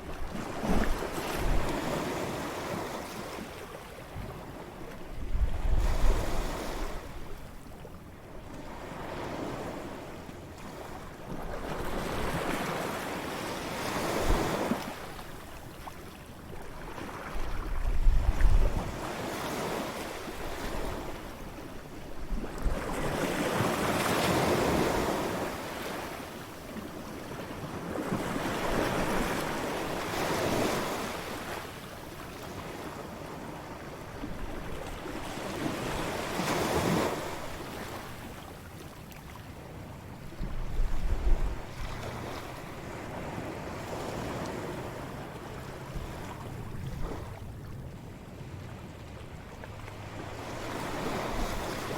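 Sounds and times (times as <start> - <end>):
ocean waves breaking on beach: 0.0 - 51.9
wind rumbling on microphone: 5.0 - 7.6, 17.2 - 19.1, 40.2 - 43.2.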